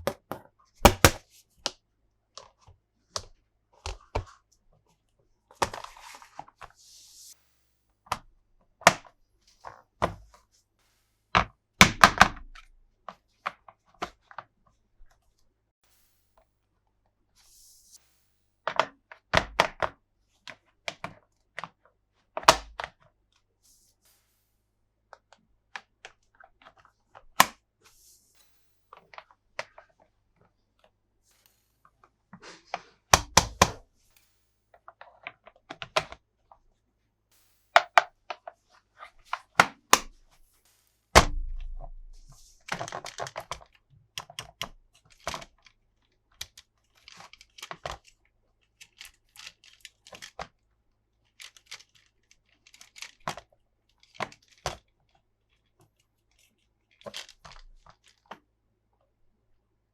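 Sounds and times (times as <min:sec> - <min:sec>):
heavy thump: 0:41.2 - 0:42.3
plastic toy parts clicking: 0:46.4 - 0:50.5, 0:51.2 - 0:54.8, 0:56.4 - 0:58.4.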